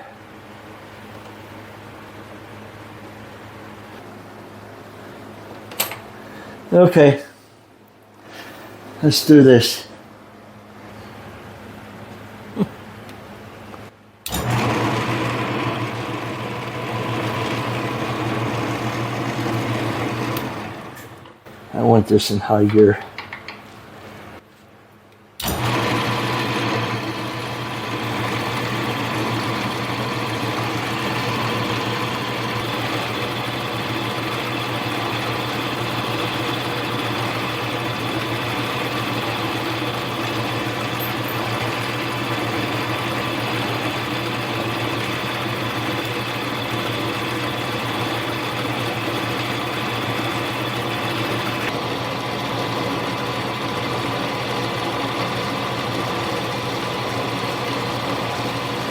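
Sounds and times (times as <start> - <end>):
lathe motor humming and whining: 14.3 - 21.4, 25.4 - 58.9.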